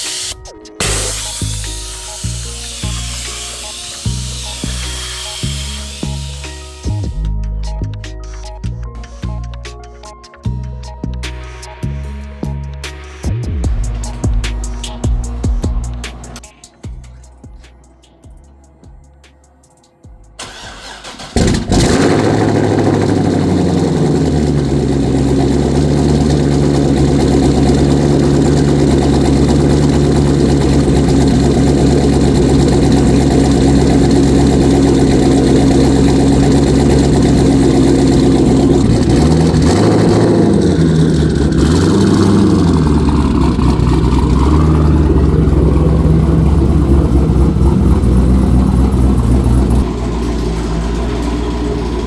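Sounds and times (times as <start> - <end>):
car engine starting and idling: 0.0 - 7.3, 20.4 - 52.0
car engine revving: 0.8 - 7.2, 20.4 - 52.0.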